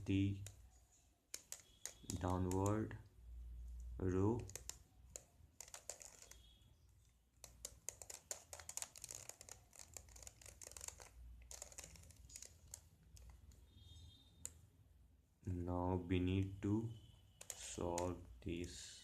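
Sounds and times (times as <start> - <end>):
rubik's cube clicking: 0.0 - 0.7, 1.3 - 2.9, 3.8 - 6.5, 7.3 - 13.7, 14.4 - 14.6, 17.4 - 18.8.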